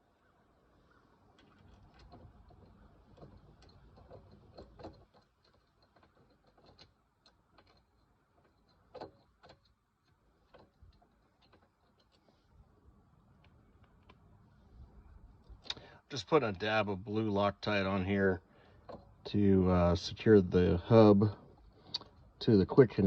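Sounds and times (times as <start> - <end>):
tools and metal parts clicking: 1.4 - 12.3.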